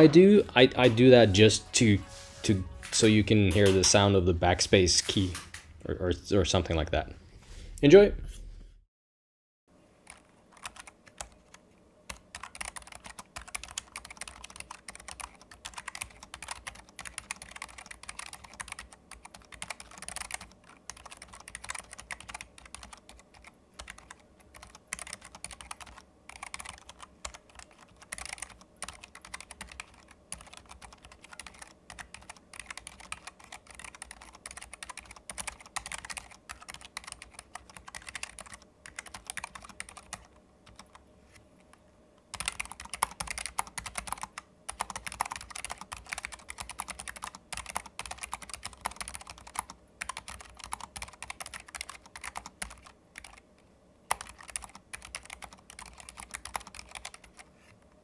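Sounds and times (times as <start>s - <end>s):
typing on mechanical keyboard: 10.0s - 41.0s, 42.3s - 53.4s, 54.1s - 57.5s.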